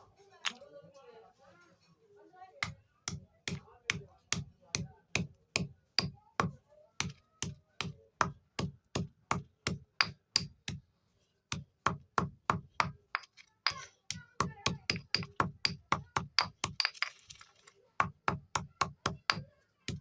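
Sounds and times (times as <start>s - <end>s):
chalk sticks being crushed: 13.2s - 14.1s, 14.9s - 17.9s.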